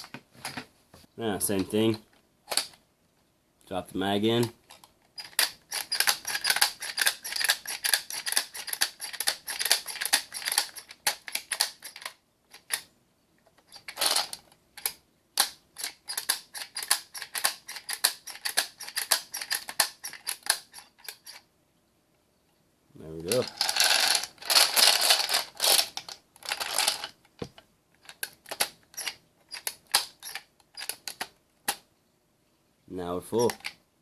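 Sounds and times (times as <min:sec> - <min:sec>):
cartridges rattling: 0:23.3 - 0:27.1.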